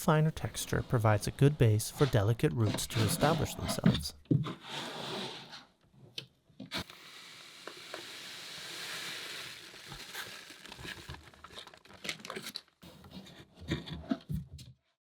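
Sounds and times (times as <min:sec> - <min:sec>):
soil powder pouring hiss: 0:06.8 - 0:11.6
bag crinkling: 0:07.6 - 0:12.8.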